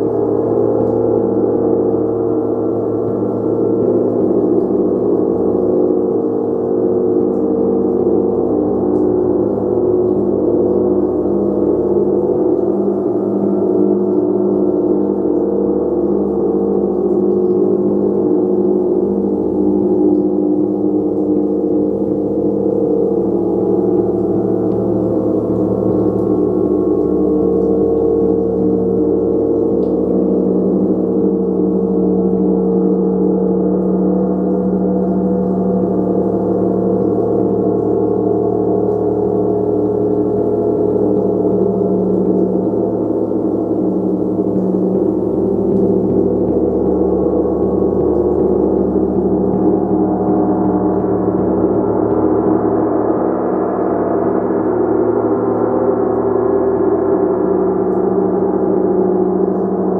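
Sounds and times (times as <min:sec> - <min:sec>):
gong ringing: 0:19.2 - 0:53.1.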